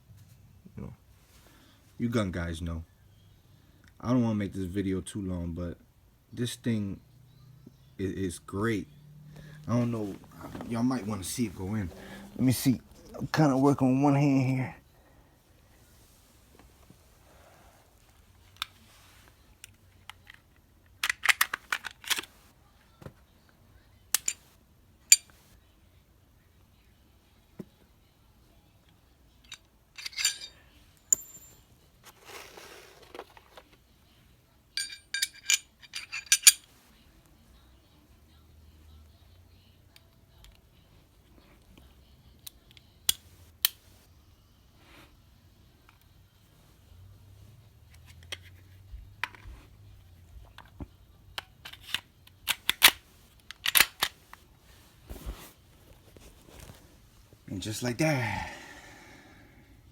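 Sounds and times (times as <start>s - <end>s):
soft rustle: 9.4s - 13.8s, 15.1s - 20.0s, 54.1s - 57.8s
metal pistol parts clinking: 20.1s - 22.3s, 24.1s - 24.5s, 25.1s - 25.4s, 29.4s - 31.6s, 34.8s - 36.7s, 51.4s - 54.2s
pistol metallic clicks and clacks: 51.7s - 54.1s.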